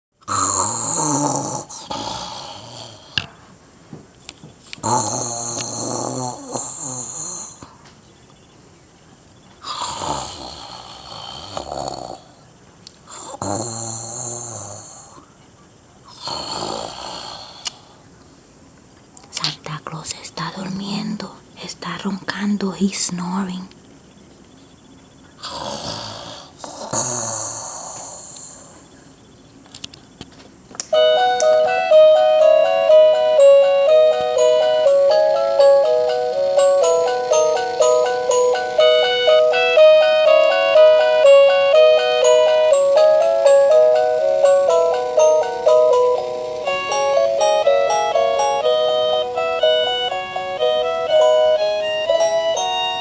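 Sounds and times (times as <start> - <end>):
person imitating snoring: 0.2 - 3.3, 4.8 - 7.7, 9.6 - 12.4, 13.1 - 15.2, 16.1 - 17.9, 25.4 - 28.8.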